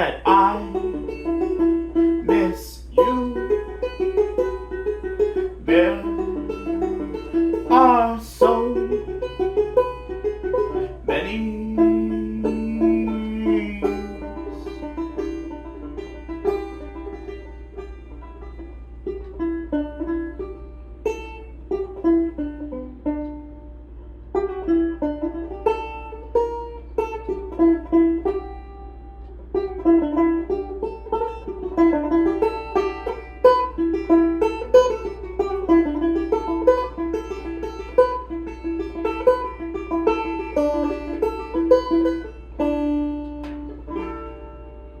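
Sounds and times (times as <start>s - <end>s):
plucked string instrument melody: 0.0s - 45.0s.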